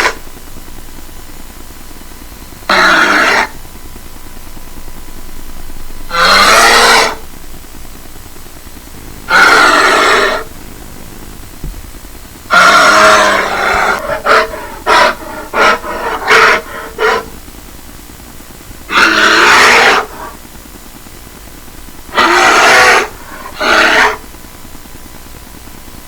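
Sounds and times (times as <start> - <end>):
bear grunting: 0.0 - 0.2, 2.6 - 3.6, 6.1 - 7.3, 9.1 - 11.0, 12.5 - 17.4, 18.9 - 20.4, 22.1 - 24.2
bear roaring: 0.0 - 0.2, 2.6 - 3.6, 6.1 - 7.3, 9.2 - 10.6, 12.5 - 17.4, 18.9 - 20.4, 22.1 - 24.2.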